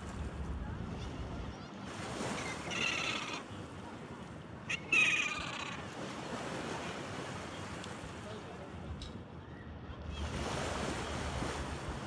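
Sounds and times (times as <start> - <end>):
surf: 9.8 - 12.0.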